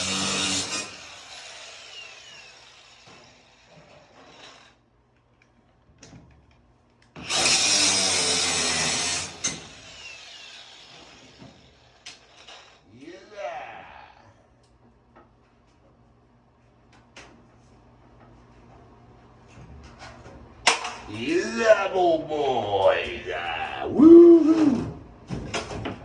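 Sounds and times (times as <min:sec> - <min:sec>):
handheld power tool running: 0:00.0 - 0:03.4, 0:07.2 - 0:12.8.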